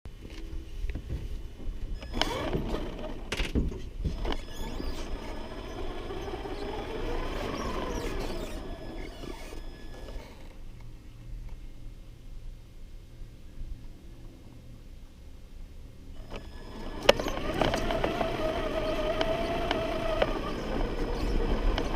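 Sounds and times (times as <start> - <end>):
toy truck motor whining: 2.0 - 3.2, 4.1 - 10.6, 16.2 - 21.9.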